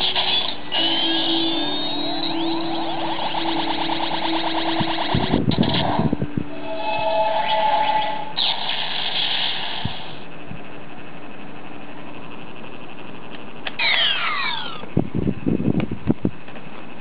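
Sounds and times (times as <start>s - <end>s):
toy belt sound effects: 0.0s - 5.4s, 13.7s - 14.8s
falling electronic sweeps: 0.0s - 10.4s, 13.7s - 14.9s.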